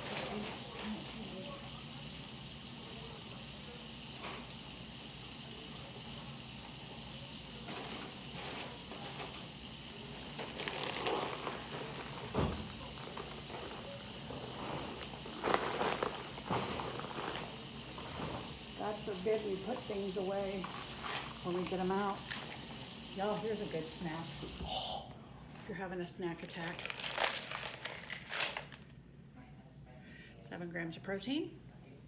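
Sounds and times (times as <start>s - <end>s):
kitchen items knocking and clattering: 10.3s - 22.0s.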